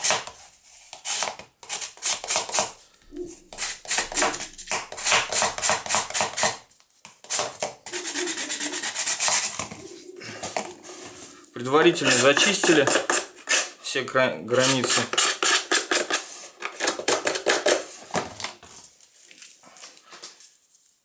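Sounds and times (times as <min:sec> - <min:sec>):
hand sanding plastic edges: 0:00.9 - 0:02.8, 0:03.5 - 0:06.6, 0:07.2 - 0:13.8, 0:14.6 - 0:18.0.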